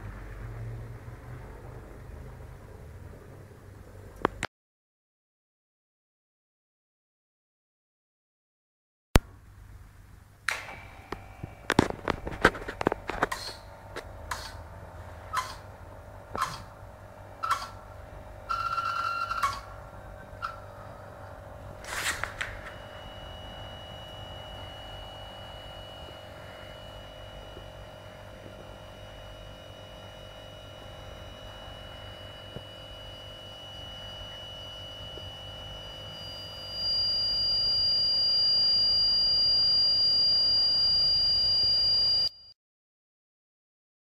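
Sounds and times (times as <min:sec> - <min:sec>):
air compressor whining: 0:10.5 - 0:39.9
high-pitched tone: 0:22.4 - 0:42.5.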